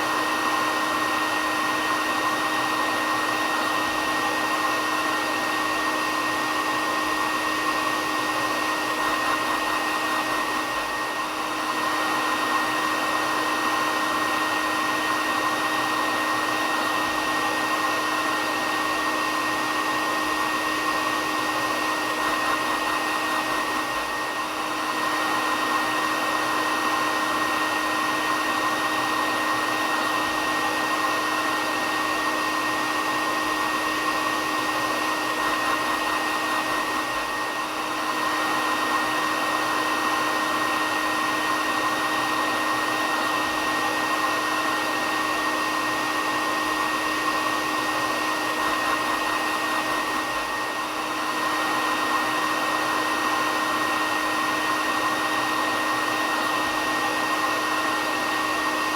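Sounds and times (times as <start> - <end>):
hair dryer running: 0.0 - 58.9.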